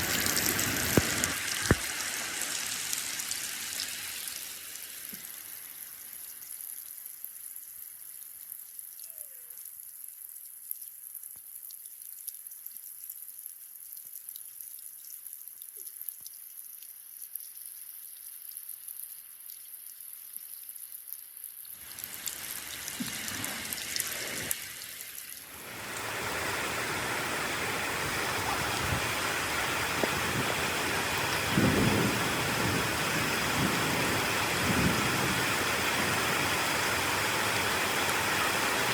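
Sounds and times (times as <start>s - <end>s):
rain falling: 0.0s - 10.6s, 21.8s - 38.9s
thunder rumbling: 26.2s - 36.4s.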